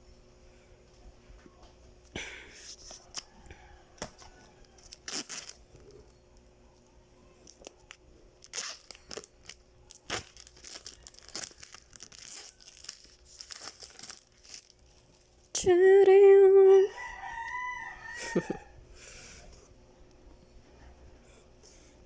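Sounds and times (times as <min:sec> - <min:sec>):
packaging torn and crinkled: 0:04.6 - 0:06.2, 0:07.4 - 0:15.5.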